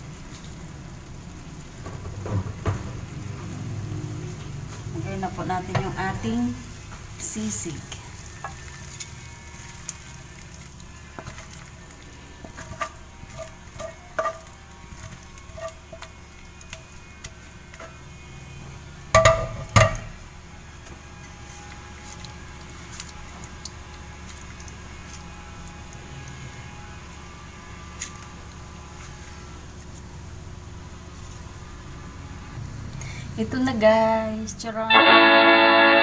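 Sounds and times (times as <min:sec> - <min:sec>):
faint sizzle: 0:00.0 - 0:36.0
utensil clinking and scraping pan: 0:07.3 - 0:18.1
cookware knocks: 0:19.2 - 0:20.1.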